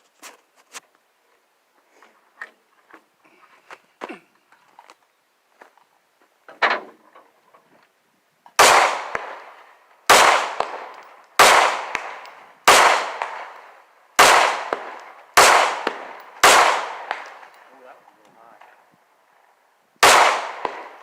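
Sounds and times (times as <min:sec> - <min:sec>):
pistol shots with echo: 0:08.6 - 0:17.8, 0:20.0 - 0:21.0.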